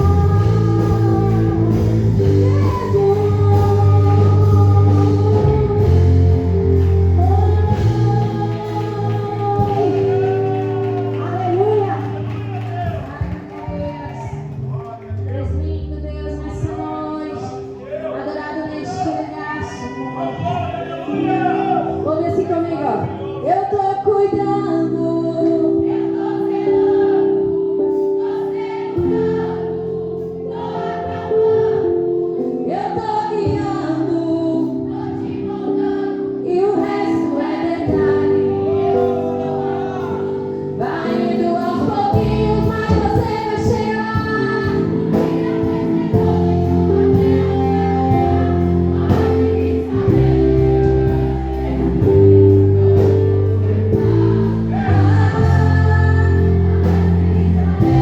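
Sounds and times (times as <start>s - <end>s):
band playing: 0.0s - 14.2s, 38.9s - 58.0s
gospel singers: 0.0s - 58.0s.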